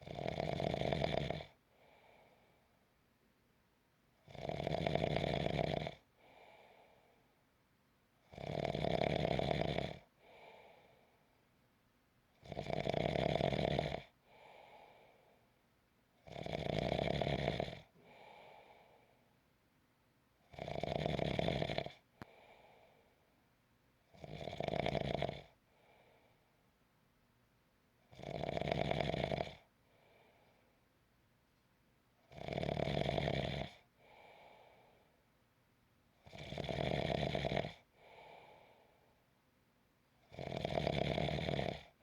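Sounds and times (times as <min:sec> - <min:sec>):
loud snoring: 0:00.0 - 0:01.6, 0:04.2 - 0:06.1, 0:08.3 - 0:10.1, 0:12.4 - 0:14.2, 0:16.2 - 0:18.3, 0:20.5 - 0:22.4, 0:24.1 - 0:25.6, 0:28.1 - 0:29.7, 0:32.3 - 0:34.2, 0:36.2 - 0:38.4, 0:40.3 - 0:42.0
faint breath sound: 0:01.5 - 0:03.0, 0:06.0 - 0:07.5, 0:10.0 - 0:11.5, 0:14.1 - 0:15.7, 0:17.8 - 0:19.5, 0:22.0 - 0:23.5, 0:25.5 - 0:26.8, 0:29.6 - 0:31.0, 0:33.8 - 0:35.5, 0:37.8 - 0:39.4.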